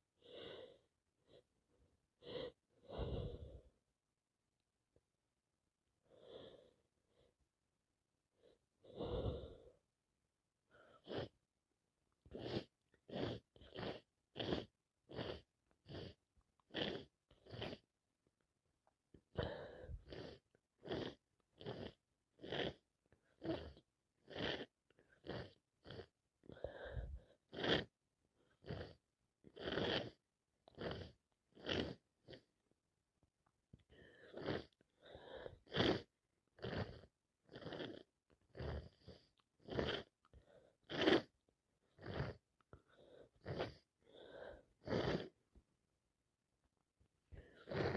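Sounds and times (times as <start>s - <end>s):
breathy sounds: 0.2s - 3.8s, 8.4s - 9.9s, 19.2s - 32.5s, 33.8s - 45.4s, 47.3s - 47.9s.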